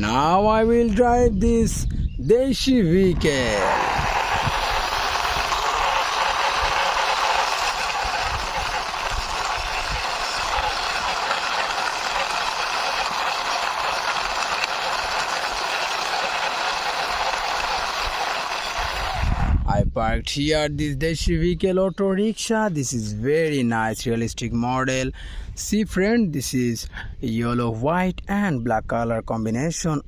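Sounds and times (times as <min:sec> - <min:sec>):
toy wheels rolling along a wall: 0:03.4 - 0:19.5.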